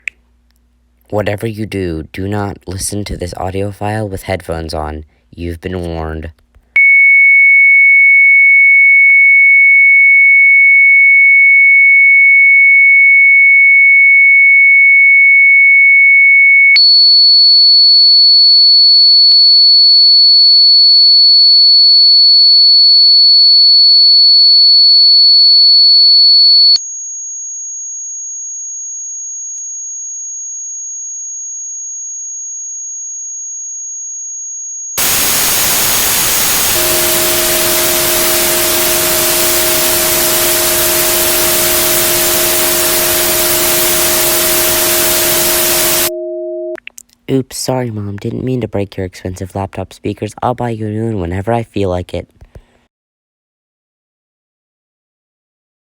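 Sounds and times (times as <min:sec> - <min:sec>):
high sine test tone: 0:34.8 - 0:46.8
white noise hiss: 0:35.0 - 0:46.1
low steady tones: 0:35.0 - 0:46.8.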